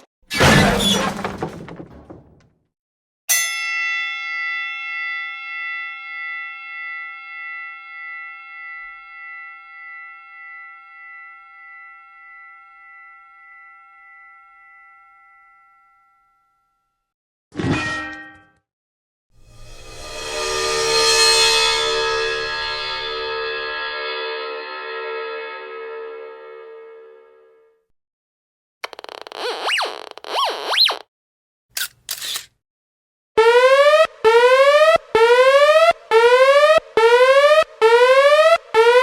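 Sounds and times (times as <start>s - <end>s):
metal bell ringing: 3.3s - 15.6s.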